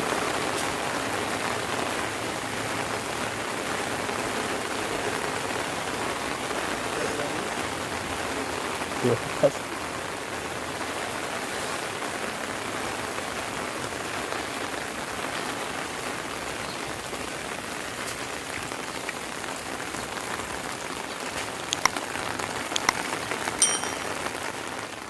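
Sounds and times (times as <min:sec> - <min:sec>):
heavy rain: 0:00.0 - 0:23.6
ringing ping: 0:23.6 - 0:24.3.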